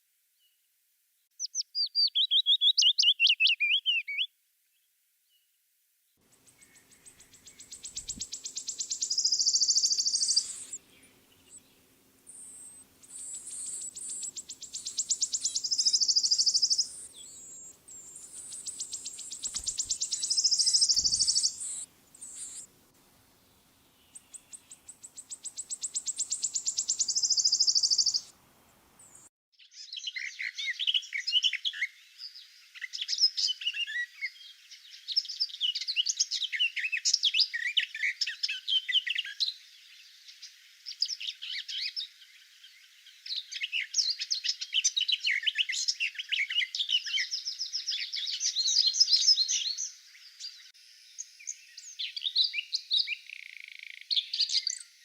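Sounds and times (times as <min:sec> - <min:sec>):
chorus of birds chirping: 0:01.5 - 0:04.3, 0:06.3 - 0:22.7, 0:23.5 - 0:55.0
bird high rapid trill: 0:12.3 - 0:22.7.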